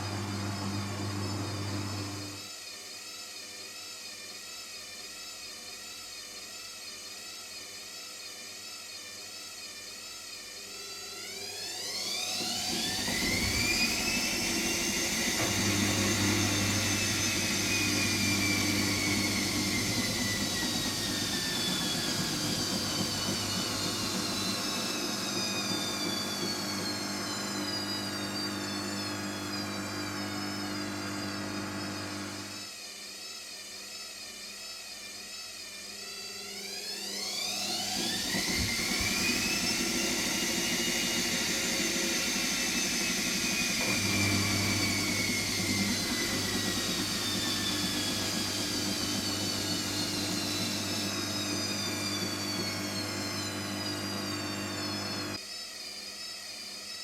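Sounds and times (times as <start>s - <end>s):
washing machine whirring: 0.0s - 2.4s, 11.4s - 32.7s, 37.3s - 55.4s
spinning drum whine: 12.9s - 32.6s, 38.0s - 55.4s.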